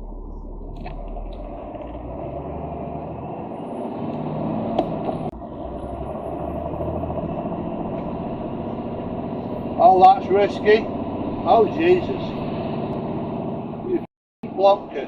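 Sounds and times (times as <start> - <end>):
lorry engine and road noise: 0.0 - 15.0.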